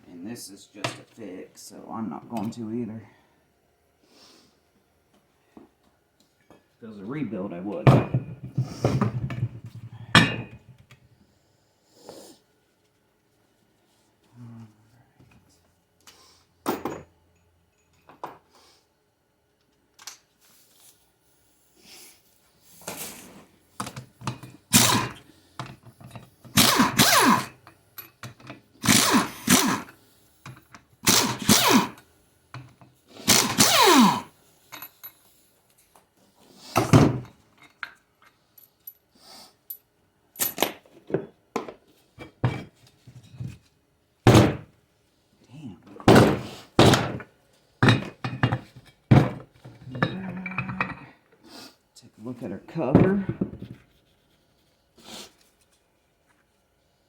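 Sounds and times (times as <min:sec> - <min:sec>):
metal parts clanking on workbench: 0:07.8 - 0:10.8, 0:16.7 - 0:17.1, 0:47.8 - 0:51.1.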